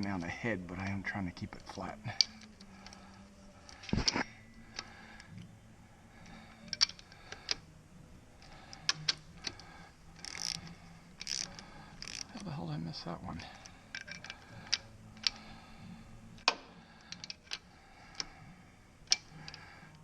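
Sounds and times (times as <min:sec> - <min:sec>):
faint steady hum: 0:00.0 - 0:20.0
wrench ratcheting: 0:06.6 - 0:07.6, 0:08.4 - 0:12.5, 0:13.5 - 0:15.4, 0:16.4 - 0:18.3, 0:19.1 - 0:19.6
metallic clicks and knocks: 0:06.7 - 0:07.6, 0:13.6 - 0:15.4.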